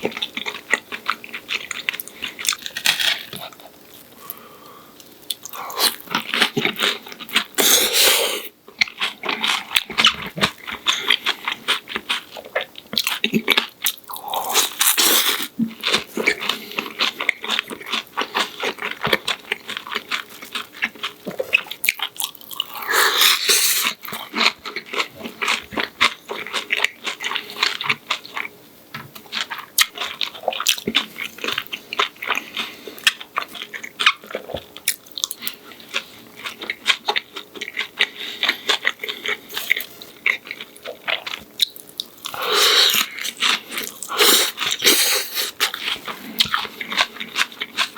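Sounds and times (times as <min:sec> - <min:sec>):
chewing crunchy fried food: 0:00.0 - 0:47.9.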